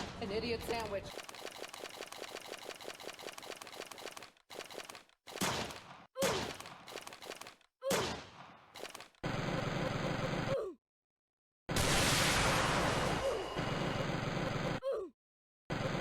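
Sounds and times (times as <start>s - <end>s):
rapid rattle of clicks: 1.1s - 5.8s, 6.6s - 7.7s, 8.8s - 9.2s.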